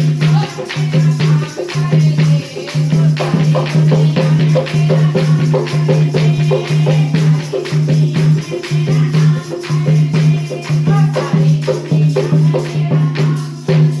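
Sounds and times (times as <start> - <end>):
rattling clicky percussion: 0.0 - 14.0.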